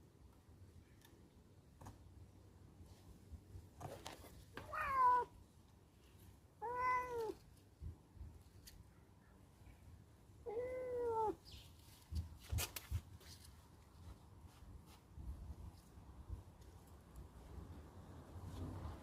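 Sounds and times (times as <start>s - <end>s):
cat meowing: 4.6s - 5.3s, 6.6s - 7.4s, 10.4s - 11.4s.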